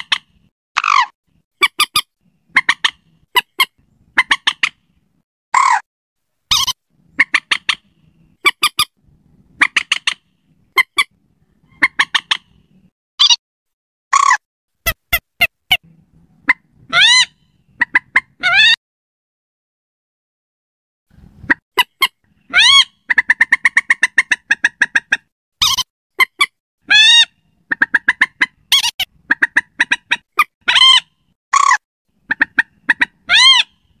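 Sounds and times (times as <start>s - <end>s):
moorhen calling: 21.8s - 25.8s, 26.9s - 34.0s.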